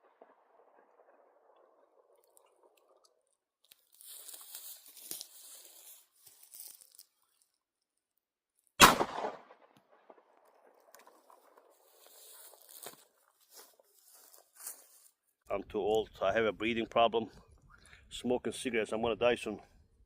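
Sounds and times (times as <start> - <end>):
pistol shot: 8.8 - 10.2.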